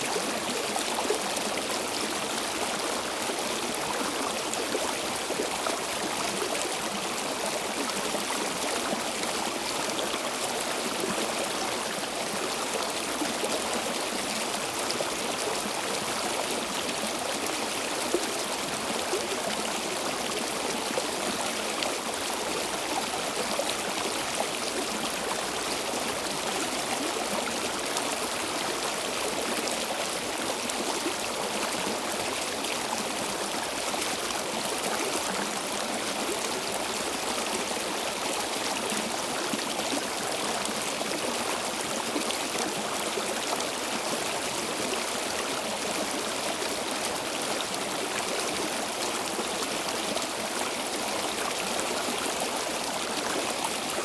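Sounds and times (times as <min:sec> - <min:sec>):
stream flowing over rocks: 0:00.0 - 0:54.0.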